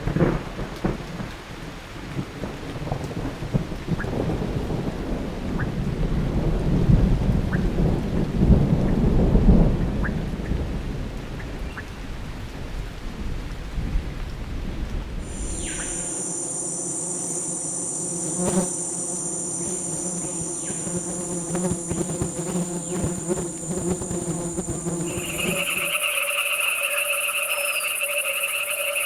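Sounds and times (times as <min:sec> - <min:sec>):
rain: 0:00.0 - 0:18.0
thunder rumble: 0:00.0 - 0:18.0
insect buzzing hum: 0:15.2 - 0:29.0
insects trilling: 0:15.2 - 0:29.0.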